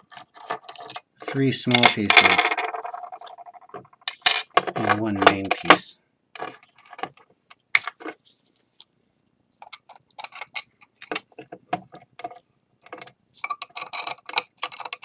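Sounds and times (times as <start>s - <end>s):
ceramic pieces clinking: 13.4s - 15.0s.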